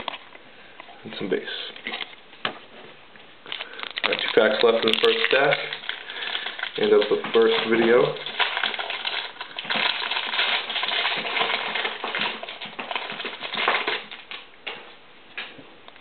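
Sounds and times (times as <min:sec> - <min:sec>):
foil wrapper tearing and crinkling: 0:03.5 - 0:14.5.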